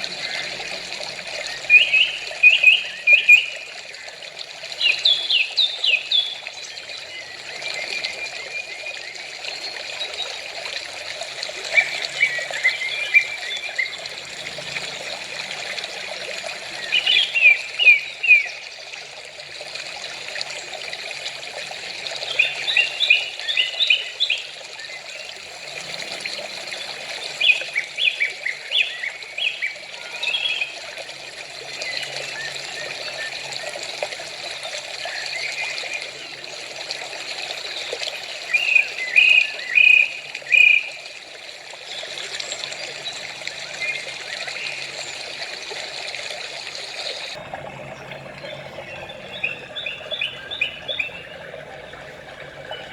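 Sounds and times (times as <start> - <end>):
trickle of running water: 0.0 - 52.9
small birds chirping: 47.1 - 52.9.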